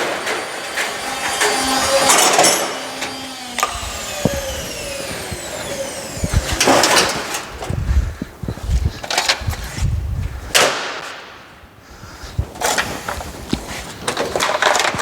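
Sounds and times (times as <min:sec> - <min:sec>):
loud rattling crash: 0:00.0 - 0:07.6
motor whining down: 0:00.0 - 0:08.0.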